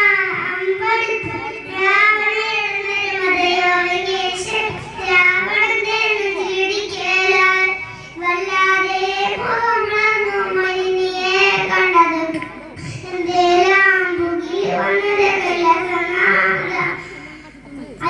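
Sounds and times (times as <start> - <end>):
child singing long notes: 0.0 - 17.5
cough: 12.2 - 13.3.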